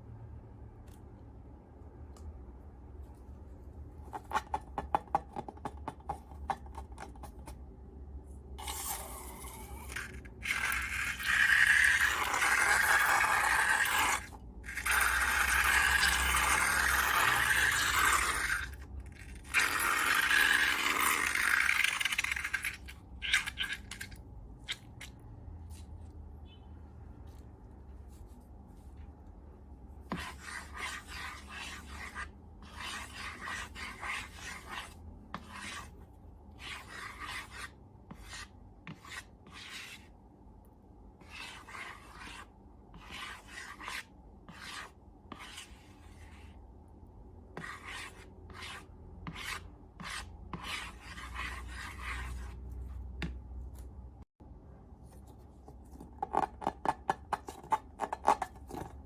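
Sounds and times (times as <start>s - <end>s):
slime rubbing and scraping: 8.6s - 25.9s, 30.0s - 36.0s, 36.6s - 40.2s, 41.2s - 46.6s, 47.6s - 53.2s.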